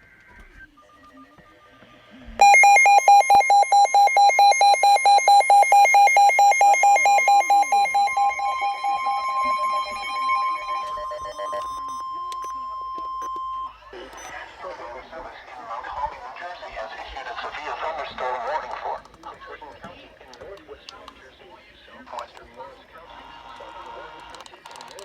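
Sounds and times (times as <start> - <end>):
two-pitch alert tone: 2.4 - 14.0
steady single tone: 5.2 - 14.0.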